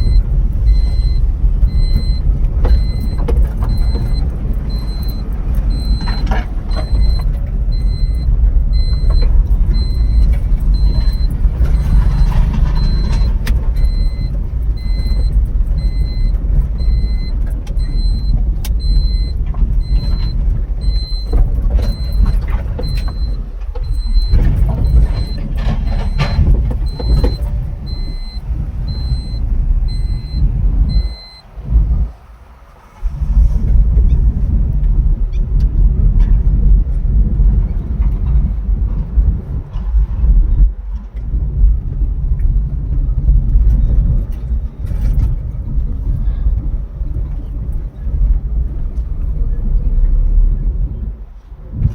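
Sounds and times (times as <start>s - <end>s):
faint high beep: 0.0s - 31.5s
car rumble: 0.0s - 51.9s.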